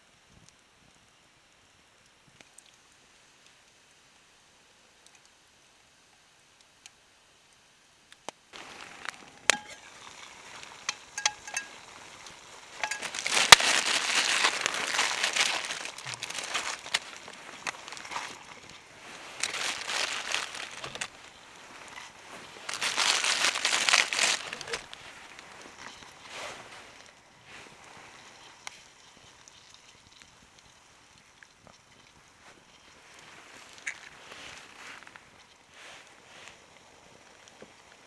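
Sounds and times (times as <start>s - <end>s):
crinkling and rustling: 8.6s - 36.8s.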